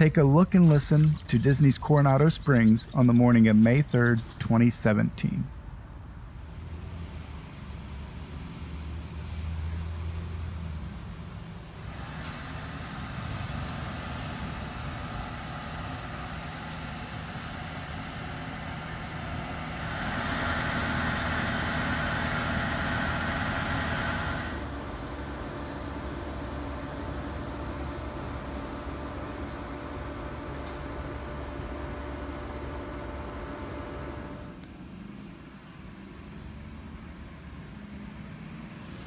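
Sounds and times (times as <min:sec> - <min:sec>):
heavy machinery engine noise: 0:11.8 - 0:32.2.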